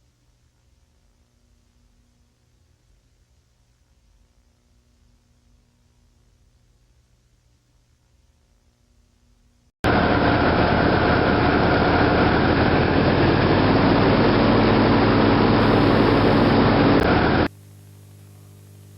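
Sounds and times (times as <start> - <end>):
loud harsh noise: 9.8 - 17.5
steady hum: 9.8 - 18.9.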